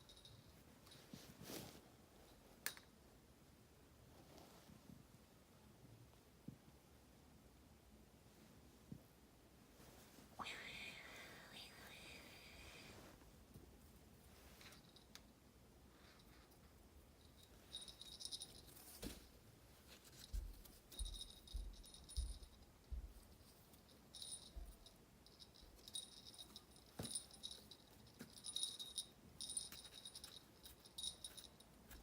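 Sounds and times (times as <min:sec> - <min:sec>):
small metal bell jingling: 0:17.2 - 0:19.2, 0:20.1 - 0:32.0.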